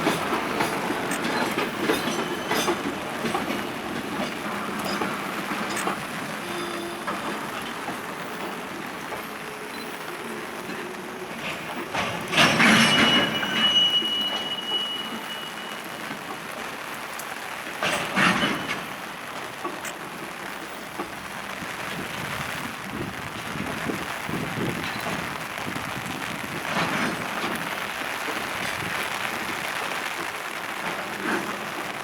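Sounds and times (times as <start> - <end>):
freight train wheels rumbling: 0.0 - 32.0
high thin brake squeal: 5.7 - 7.5, 12.0 - 16.2.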